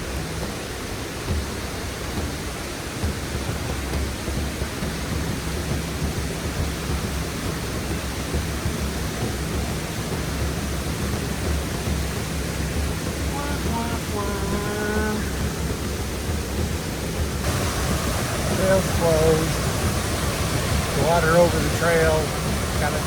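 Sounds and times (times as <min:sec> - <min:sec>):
water rushing over waterfall: 0:00.0 - 0:23.0.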